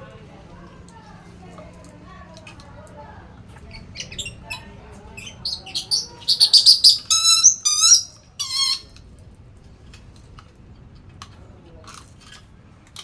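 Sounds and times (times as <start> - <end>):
parrot chirps and calls: 3.7 - 8.9.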